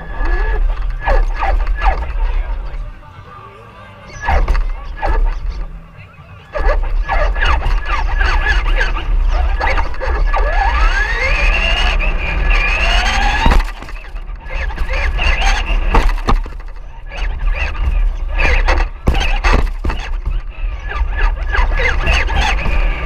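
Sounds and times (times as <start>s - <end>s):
electric motor whining: 0.0s - 2.9s, 6.5s - 23.0s
clatter and knocks: 12.6s - 23.0s.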